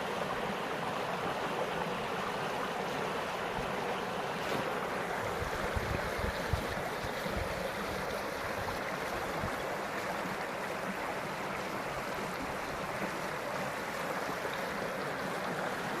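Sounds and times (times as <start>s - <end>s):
stream running: 0.0s - 16.0s.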